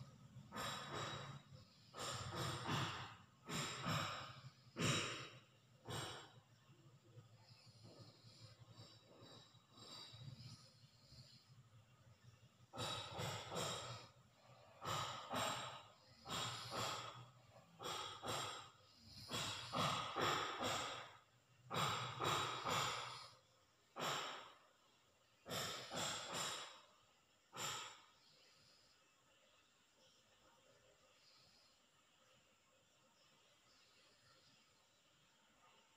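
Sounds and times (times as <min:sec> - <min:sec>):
person snoring: 0:07.4 - 0:11.5.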